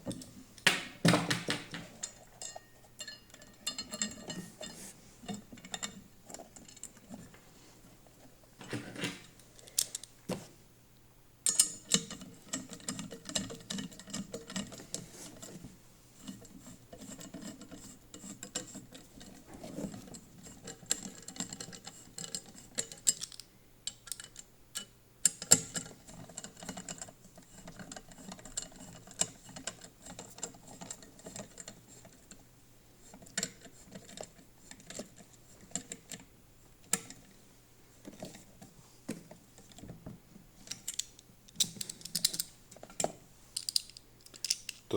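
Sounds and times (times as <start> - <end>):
knocks of parts being handled: 0.0 - 2.1.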